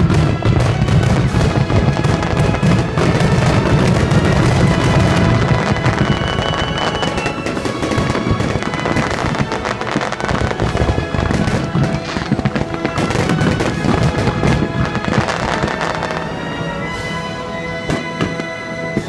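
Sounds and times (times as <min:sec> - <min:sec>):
fireworks bursting and crackling: 0:00.0 - 0:19.0
loud music: 0:00.0 - 0:19.0.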